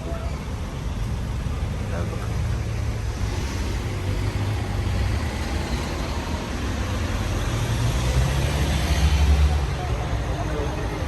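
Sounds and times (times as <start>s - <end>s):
road traffic rumble: 0.0s - 11.0s.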